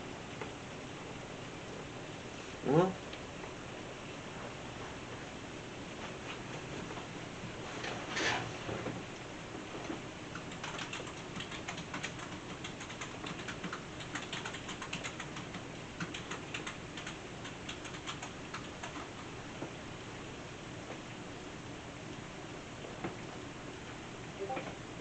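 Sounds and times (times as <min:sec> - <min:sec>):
typing on keyboard: 0:10.3 - 0:19.3.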